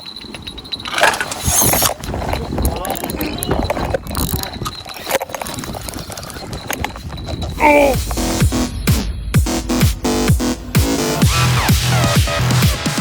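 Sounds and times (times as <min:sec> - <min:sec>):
indistinct talking: 0:04.3 - 0:10.4
low rumbling noise: 0:07.5 - 0:12.2.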